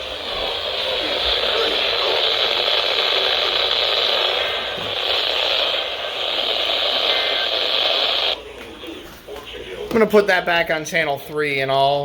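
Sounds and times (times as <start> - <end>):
radio static hiss: 0.0 - 10.0.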